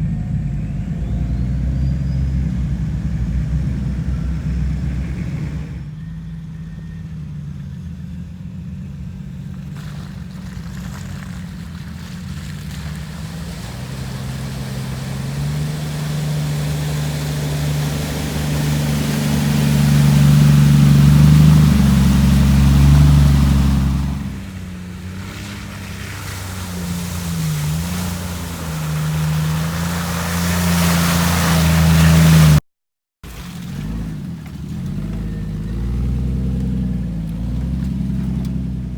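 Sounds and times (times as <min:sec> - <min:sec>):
vehicle engine revving: 0:00.0 - 0:32.6, 0:33.3 - 0:38.9
rushing hiss: 0:11.4 - 0:24.5.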